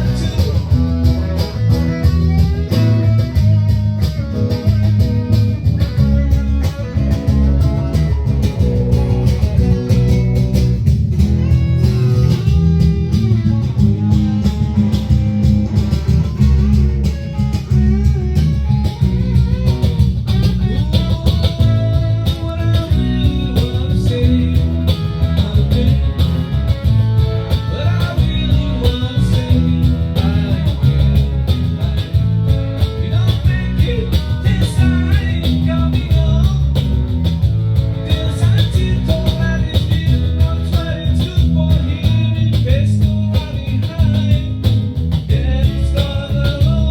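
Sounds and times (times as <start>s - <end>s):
bass and drums: 0.0s - 46.9s
electric guitar leads: 0.0s - 46.9s
person singing: 20.6s - 26.5s, 27.6s - 37.0s.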